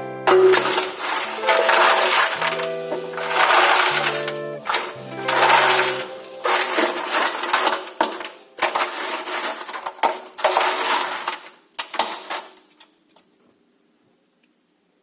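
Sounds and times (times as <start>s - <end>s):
ice rattling in washing machine drum: 0.3s - 12.8s.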